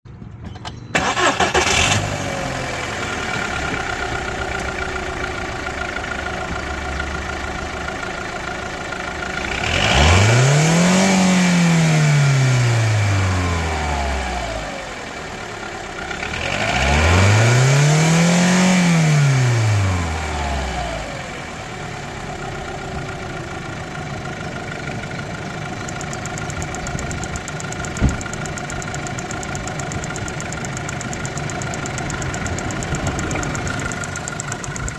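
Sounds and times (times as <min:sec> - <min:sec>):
car engine starting and idling: 0:00.2 - 0:34.9
car engine revving: 0:01.0 - 0:04.9, 0:09.3 - 0:23.7, 0:25.3 - 0:34.9.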